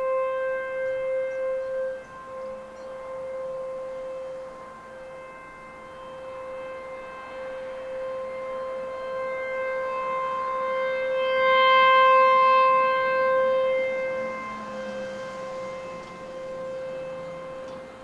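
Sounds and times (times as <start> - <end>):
warning siren steady tone: 0.0 - 18.0.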